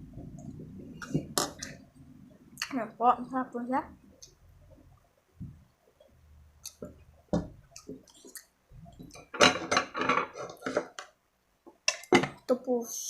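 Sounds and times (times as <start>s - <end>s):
wet chewing and smacking: 6.6s - 9.3s.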